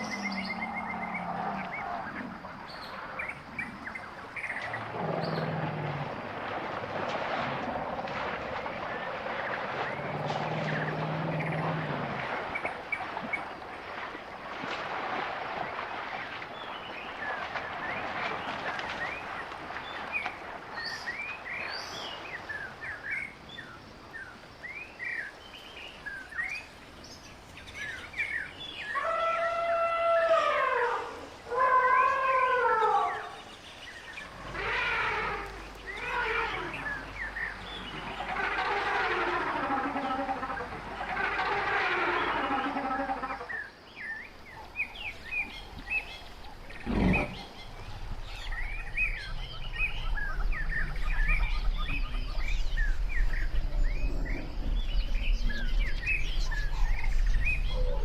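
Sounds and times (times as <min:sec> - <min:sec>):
elephants trumpeting: 0:29.0 - 0:33.4, 0:34.3 - 0:43.6, 0:46.7 - 0:47.6.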